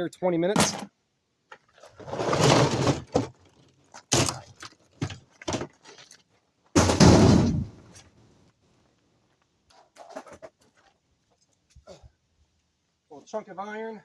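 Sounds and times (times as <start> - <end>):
knocks and clunks: 6.8 - 7.8.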